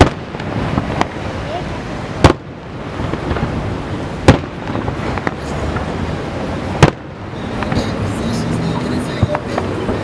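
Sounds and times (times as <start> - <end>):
rumble of fireworks: 0.0 - 10.0
firework shells bursting: 6.7 - 8.0.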